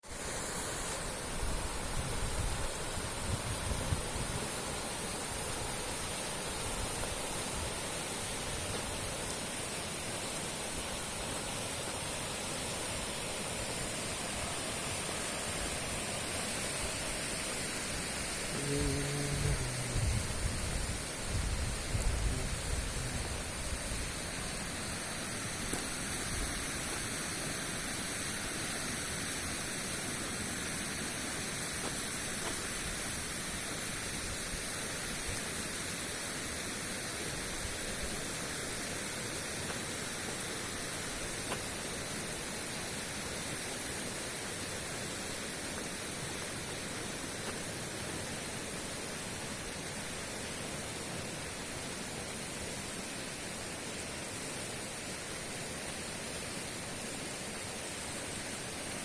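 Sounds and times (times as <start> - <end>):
fast-flowing river rushing: 0.1 - 18.5.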